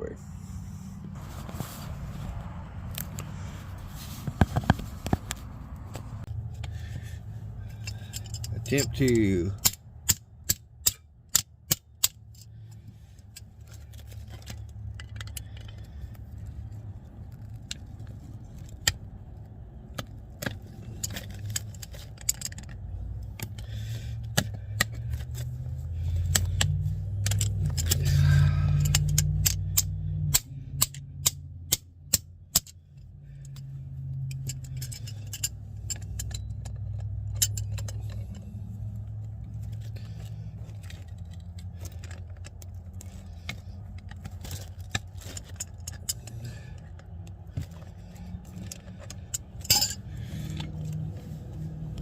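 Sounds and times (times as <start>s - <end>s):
metal tools clinking: 6.5s - 9.8s, 20.6s - 30.0s, 32.6s - 51.1s.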